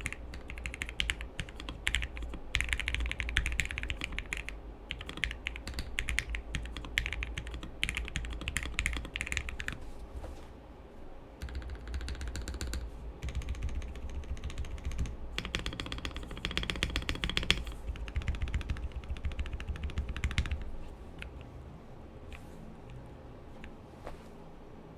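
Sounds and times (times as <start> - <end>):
fast mechanical keyboard typing: 0.0 - 9.8, 11.4 - 21.4.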